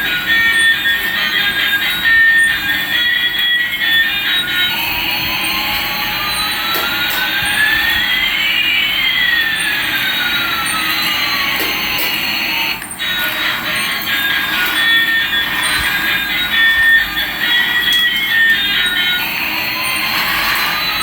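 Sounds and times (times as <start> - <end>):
whistling tones: 0.0 - 21.0.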